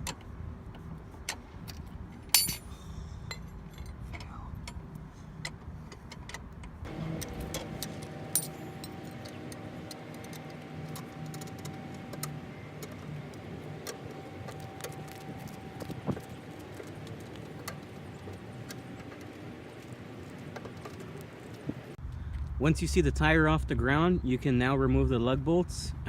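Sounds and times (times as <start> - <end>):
metallic clicks of car jack and tools: 0.0 - 15.9
sharp ringing metal clink: 2.3 - 2.7.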